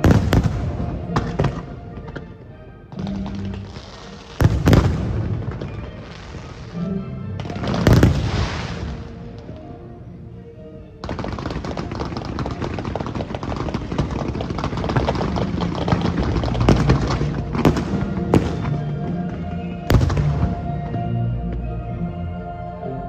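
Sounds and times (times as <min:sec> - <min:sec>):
loud firework bangs: 0:00.0 - 0:01.7, 0:03.0 - 0:06.7, 0:07.4 - 0:09.2, 0:11.0 - 0:20.8
fireworks crackling: 0:00.0 - 0:02.2, 0:02.9 - 0:09.7, 0:11.0 - 0:21.1
music: 0:00.0 - 0:23.0.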